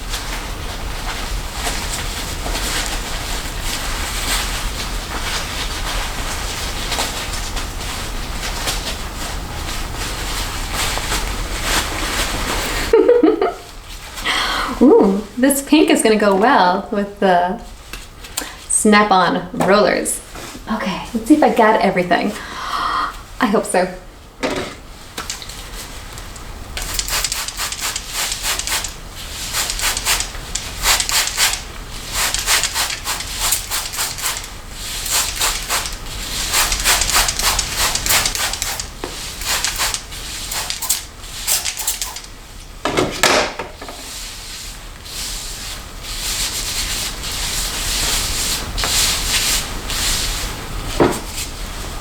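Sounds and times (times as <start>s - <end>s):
scratchy rubbing strokes: 26.8s - 42.3s.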